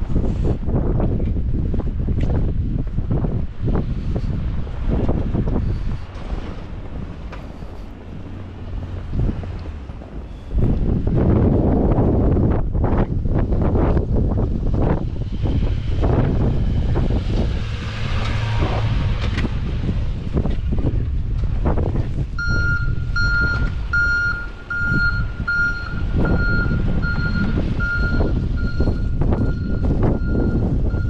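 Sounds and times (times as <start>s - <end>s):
wind buffeting microphone: 0.0s - 31.0s
truck reversing alarm beeps: 22.4s - 31.0s.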